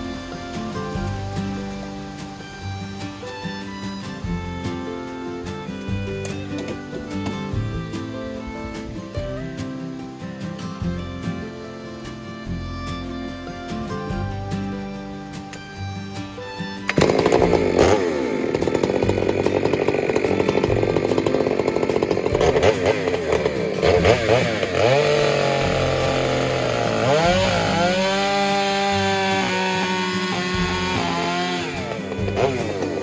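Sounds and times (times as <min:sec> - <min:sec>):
chainsaw cutting log: 0:16.9 - 0:33.0.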